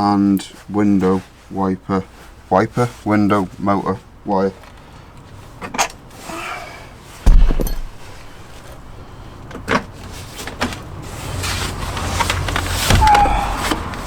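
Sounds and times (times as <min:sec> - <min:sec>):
heavy thump: 0:07.2 - 0:08.5, 0:12.9 - 0:13.8.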